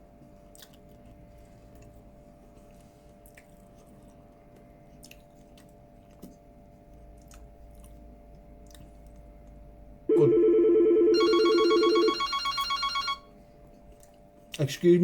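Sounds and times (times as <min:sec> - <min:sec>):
person chewing fried chicken: 0:00.2 - 0:09.8.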